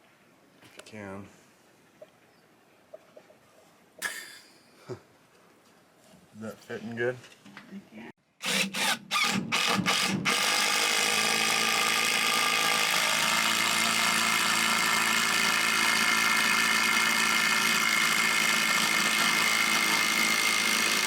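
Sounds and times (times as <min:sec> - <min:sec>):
cordless drill driving screw: 0:08.4 - 0:21.0.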